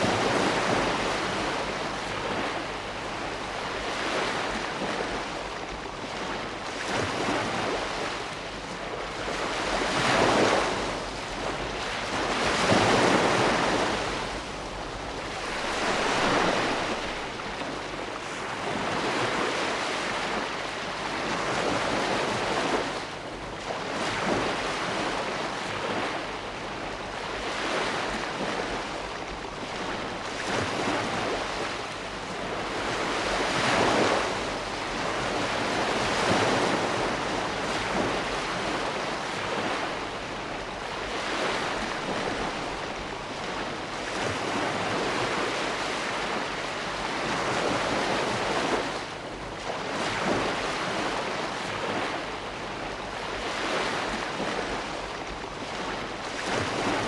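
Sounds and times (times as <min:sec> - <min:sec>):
ocean waves breaking on shore: 0:00.0 - 0:57.0.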